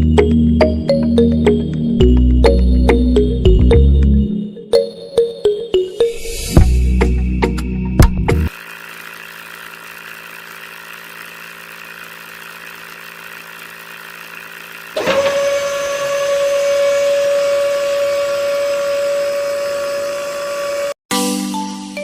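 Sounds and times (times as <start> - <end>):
small electric motor whining: 8.5 - 21.0.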